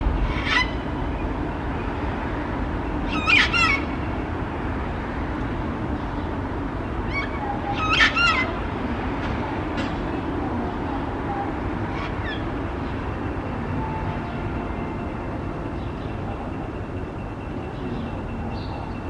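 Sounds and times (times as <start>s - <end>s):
low background rumble: 0.0s - 19.0s
cockatoo calls: 0.2s - 0.9s, 7.1s - 8.7s, 9.7s - 12.6s.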